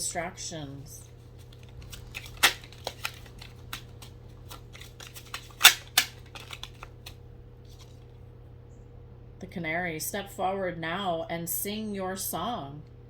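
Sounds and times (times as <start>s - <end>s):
cards clicking and snapping: 1.4s - 7.2s.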